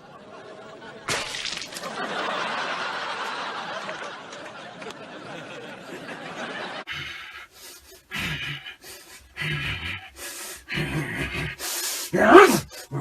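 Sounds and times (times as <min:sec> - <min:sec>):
person gasping: 0:06.9 - 0:13.0.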